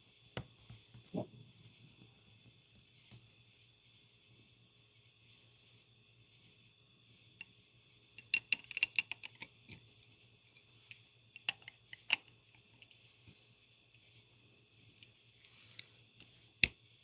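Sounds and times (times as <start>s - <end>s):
faint steady hum: 0.0s - 17.0s
small metallic clicks and clinks: 8.2s - 13.1s.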